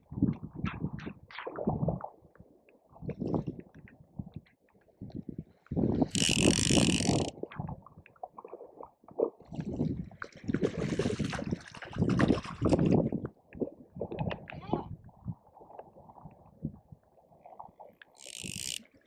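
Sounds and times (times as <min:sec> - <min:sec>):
wind buffeting microphone: 0:00.0 - 0:02.1, 0:03.0 - 0:07.8, 0:09.5 - 0:15.4
fishing reel ratchet clicking: 0:06.1 - 0:07.3, 0:18.2 - 0:18.9.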